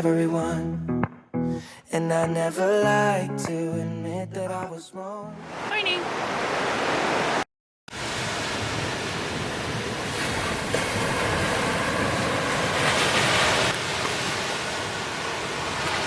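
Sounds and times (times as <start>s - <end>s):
ocean surf on beach: 5.4s - 16.0s.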